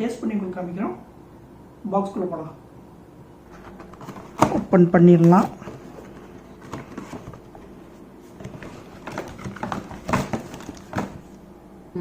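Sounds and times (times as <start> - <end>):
packaging rustling and crackling: 3.5 - 11.4
packaging snapping: 8.4 - 11.3.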